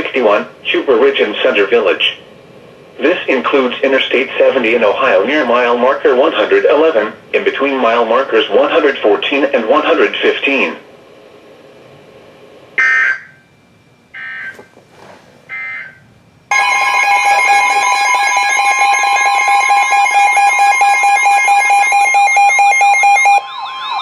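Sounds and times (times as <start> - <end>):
loud steady alert tone: 12.8 - 13.5, 14.1 - 14.6, 15.5 - 24.0
warbling siren-like tone: 12.8 - 13.5, 15.5 - 24.0
screeching digital data bursts: 16.5 - 23.4.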